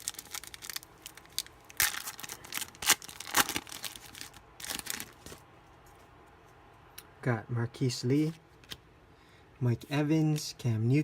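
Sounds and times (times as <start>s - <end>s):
wrapper tearing and crinkling: 0.0s - 5.4s.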